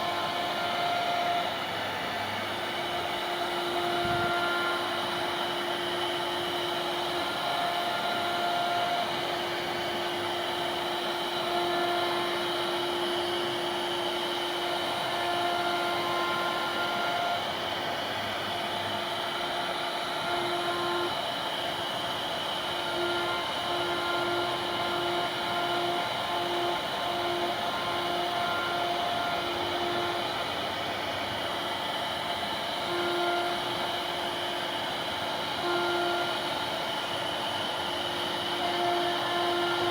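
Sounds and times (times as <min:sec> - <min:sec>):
cnc router cutting wood: 0:00.0 - 0:39.9.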